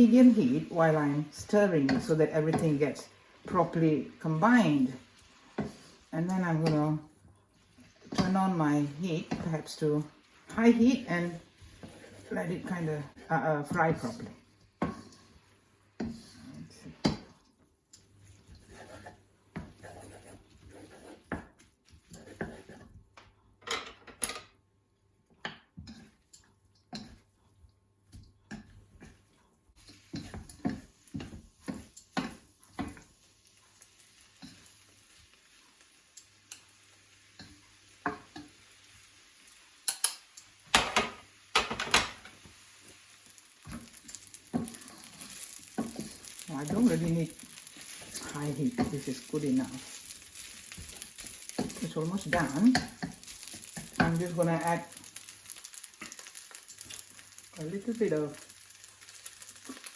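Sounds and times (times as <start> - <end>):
noodles sizzling: 0.0 - 23.2, 25.4 - 59.9
utensil scraping a pan: 10.5 - 17.4, 18.2 - 23.0.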